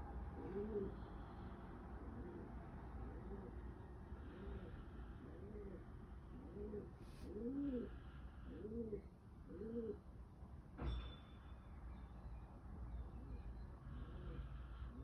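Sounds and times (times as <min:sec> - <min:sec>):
pigeon cooing: 0:00.4 - 0:01.0, 0:02.0 - 0:03.6, 0:04.3 - 0:10.0.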